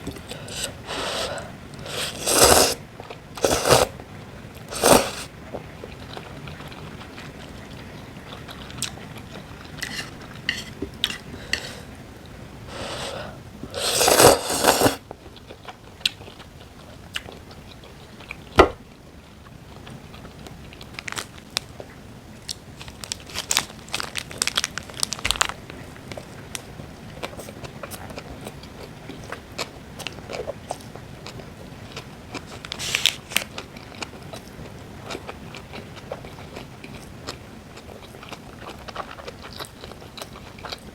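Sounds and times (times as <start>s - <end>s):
person crunching and chewing: 0.1s - 2.8s, 3.4s - 4.0s, 4.7s - 5.3s, 12.7s - 15.0s.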